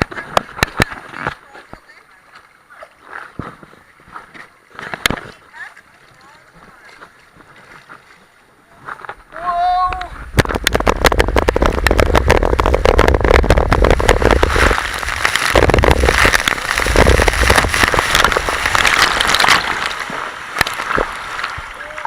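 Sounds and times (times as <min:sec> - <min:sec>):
water rushing along a slide: 0:00.0 - 0:22.0
wind buffeting microphone: 0:09.9 - 0:20.2.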